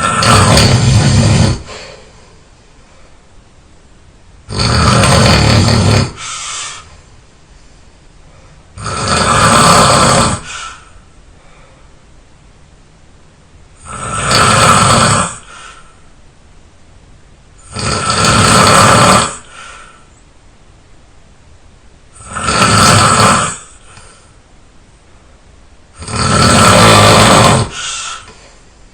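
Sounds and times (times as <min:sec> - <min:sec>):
person snoring loudly: 0:00.0 - 0:02.0, 0:04.5 - 0:06.8, 0:08.8 - 0:10.9, 0:13.8 - 0:15.8, 0:17.6 - 0:19.6, 0:22.2 - 0:24.2, 0:26.0 - 0:28.3.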